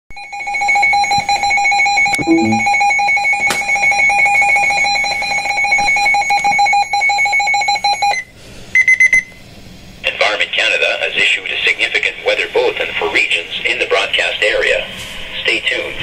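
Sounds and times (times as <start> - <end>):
electronic alarm tone with flutter: 2.2 - 2.9.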